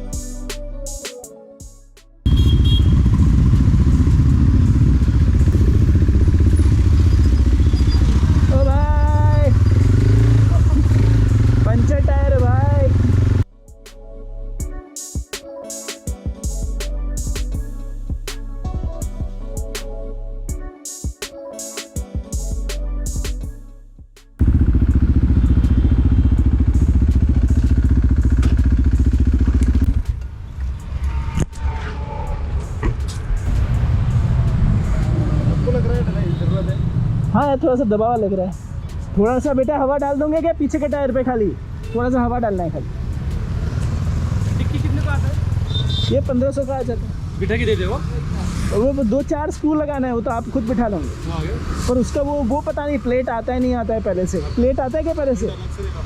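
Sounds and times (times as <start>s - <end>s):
motorcycle engine running: 2.3s - 13.4s, 24.4s - 30.1s.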